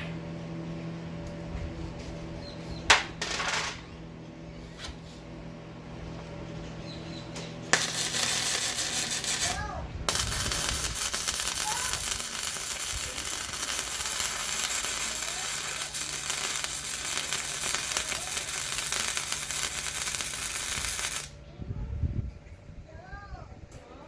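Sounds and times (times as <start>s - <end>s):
welding arc crackling: 7.7s - 21.4s.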